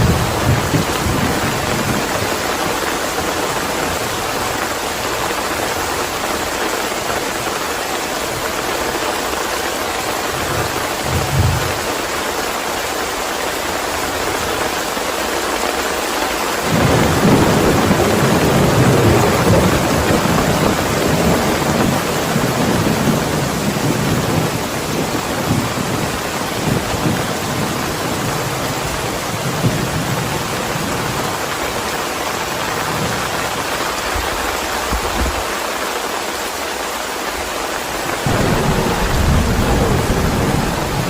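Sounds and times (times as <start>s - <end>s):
thunder rumbling: 0.0s - 6.6s, 10.1s - 12.4s, 16.6s - 35.4s, 38.1s - 41.0s
heavy rain: 0.0s - 41.0s.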